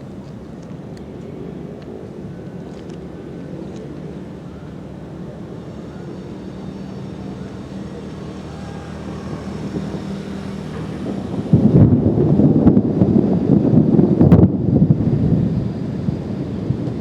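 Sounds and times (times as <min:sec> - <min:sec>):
model aircraft motor hum: 0:00.0 - 0:17.0
wind rush: 0:06.6 - 0:17.0.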